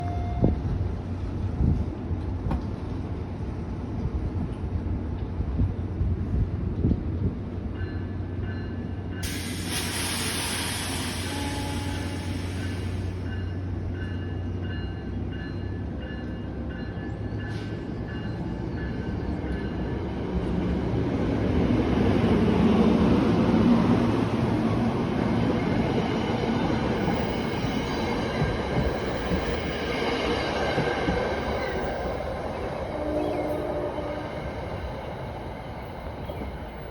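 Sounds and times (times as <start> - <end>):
train wheels rumbling on rails: 0.0 - 36.9
high ringing tone: 32.9 - 34.4.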